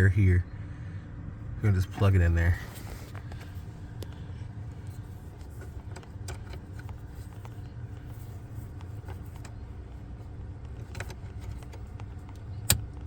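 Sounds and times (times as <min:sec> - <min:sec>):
low steady rumble: 0:00.0 - 0:13.0
connector clicks and handling: 0:10.6 - 0:13.0.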